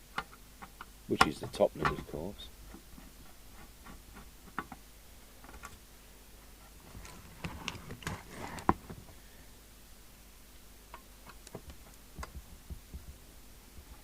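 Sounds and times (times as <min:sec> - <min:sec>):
tools clicking and scraping on case: 0:06.9 - 0:08.9.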